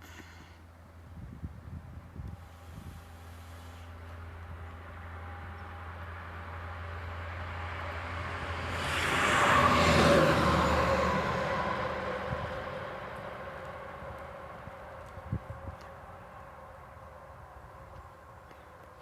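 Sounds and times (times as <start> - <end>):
vehicle passing by: 3.4 - 16.9.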